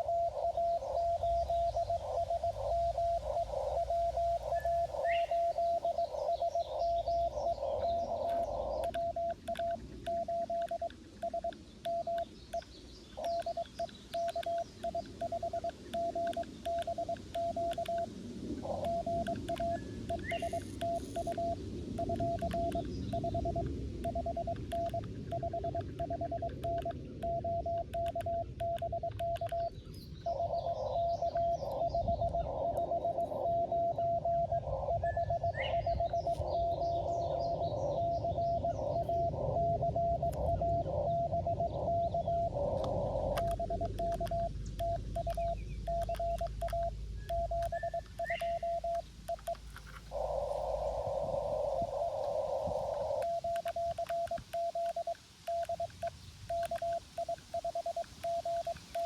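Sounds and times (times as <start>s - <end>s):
morse code beeping: 8.0s - 12.2s, 13.2s - 18.1s, 18.7s - 29.7s, 39.2s - 49.6s, 52.6s - 59.0s.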